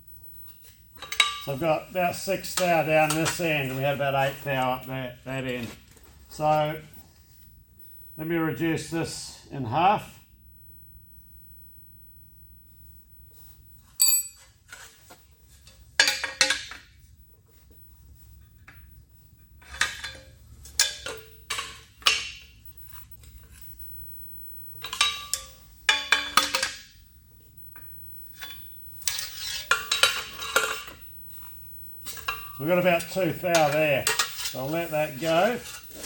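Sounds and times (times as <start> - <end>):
hand tools clinking and scraping on metal: 0.4 - 6.7, 28.3 - 36.0.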